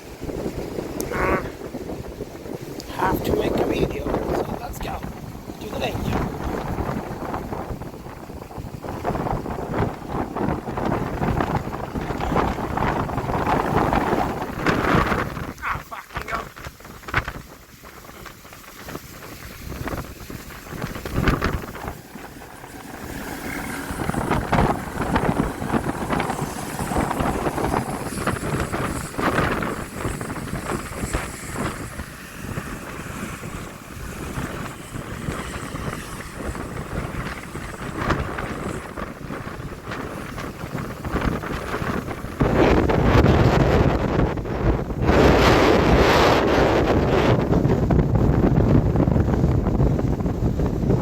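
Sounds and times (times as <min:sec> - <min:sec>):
hurricane wind gusting on microphone: 0:00.0 - 0:51.0.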